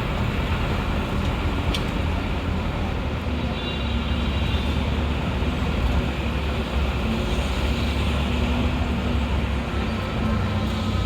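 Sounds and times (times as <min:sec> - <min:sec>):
street noise: 0:00.0 - 0:11.0
vehicle engines rumbling: 0:00.0 - 0:11.0.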